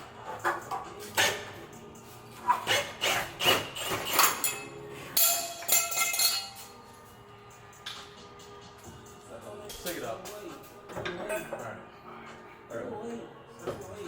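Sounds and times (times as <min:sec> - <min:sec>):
metal tools clanking on metal: 0:03.4 - 0:06.9.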